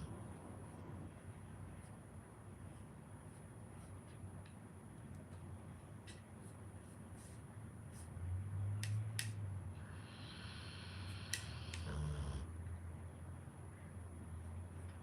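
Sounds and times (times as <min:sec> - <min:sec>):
dog snoring: 0:09.8 - 0:12.5.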